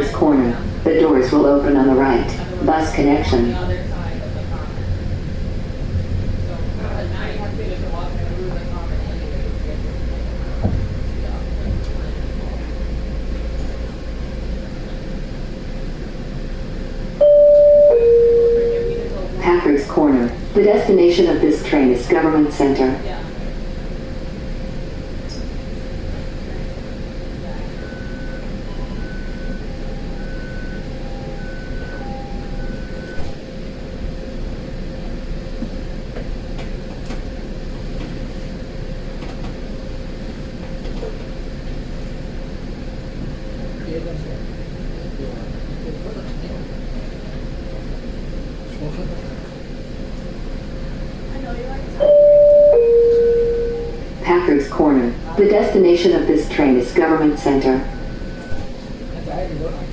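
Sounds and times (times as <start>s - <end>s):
train hum and rumble: 0.0s - 59.9s
electronic chime: 52.0s - 54.0s.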